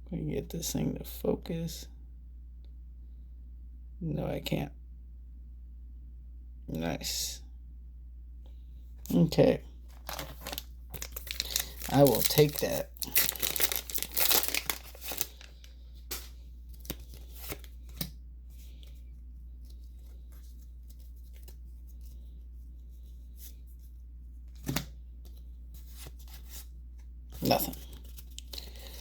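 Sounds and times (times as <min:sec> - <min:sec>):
steady low hum: 0:00.0 - 0:29.0
foil wrapper tearing and crinkling: 0:09.9 - 0:17.7
cards rustling and tapping: 0:09.9 - 0:29.0.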